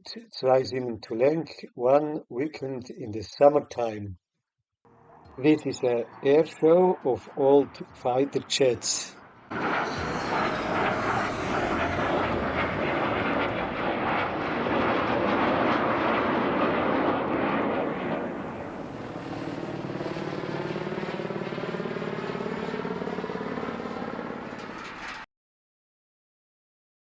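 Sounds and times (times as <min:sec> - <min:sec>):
jets flying past: 0:05.2 - 0:25.2.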